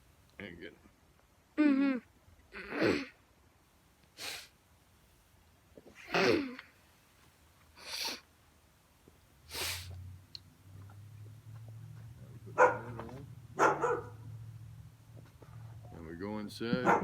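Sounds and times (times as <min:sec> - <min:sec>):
dog barking: 0:12.5 - 0:14.3, 0:16.7 - 0:17.0.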